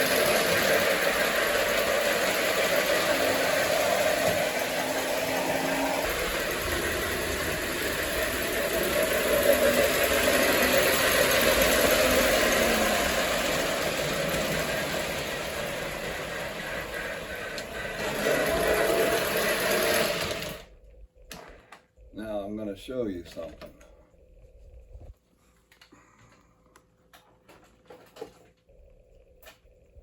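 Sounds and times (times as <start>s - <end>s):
toy train mechanical chuffing: 0.0s - 20.8s.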